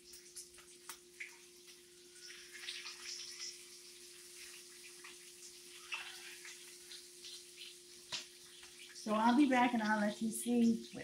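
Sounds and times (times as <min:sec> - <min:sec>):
bacon sizzling in a frying pan: 0:00.0 - 0:11.0.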